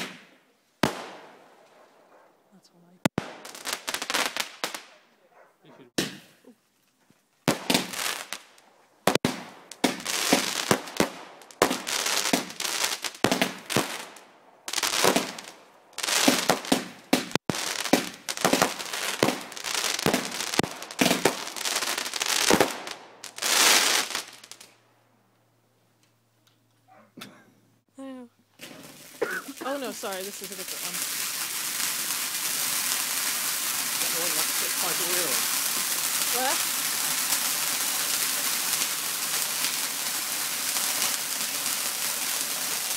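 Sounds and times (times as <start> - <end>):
fireworks bangs and crackling: 0.0 - 1.8, 3.0 - 5.1, 5.9 - 6.6, 7.4 - 24.8, 28.6 - 42.9.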